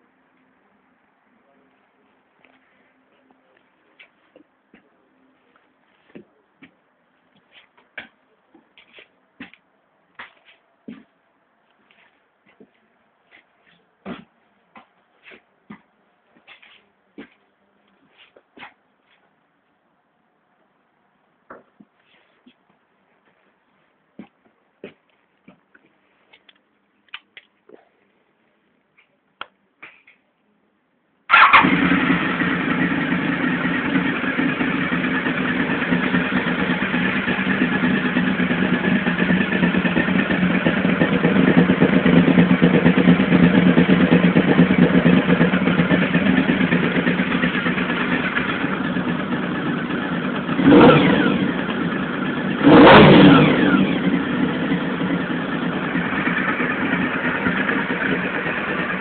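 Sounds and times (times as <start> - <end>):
motorcycle engine idling: 31.3 - 59.0
motorcycle throttle blips: 31.3 - 59.0.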